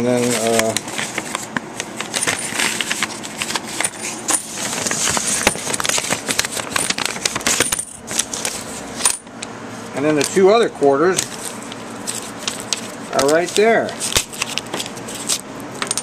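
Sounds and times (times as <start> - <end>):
paper rustling and crinkling: 0.1 - 8.8, 11.2 - 15.4
coins clinking: 2.0 - 9.3, 11.2 - 16.0.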